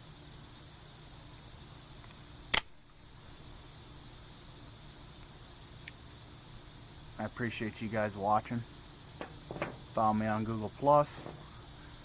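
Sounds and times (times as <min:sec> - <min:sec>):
crickets chirring: 0:00.0 - 0:12.0
switchblade snapping open: 0:02.6 - 0:02.8.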